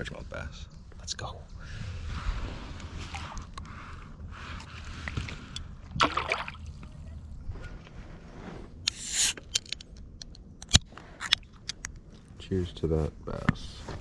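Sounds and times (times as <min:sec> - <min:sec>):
water sloshing: 0:05.1 - 0:07.4
rustle: 0:06.9 - 0:09.9
hissing burst: 0:08.9 - 0:09.4.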